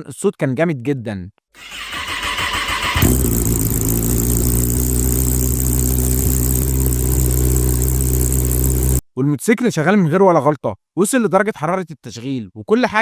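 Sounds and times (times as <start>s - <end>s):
motorcycle engine idling: 2.2s - 9.0s.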